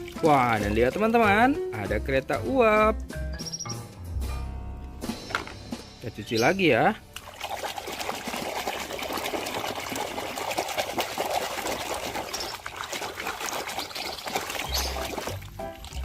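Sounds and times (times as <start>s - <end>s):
water trickling and pouring: 0.0s - 1.3s, 7.1s - 16.0s.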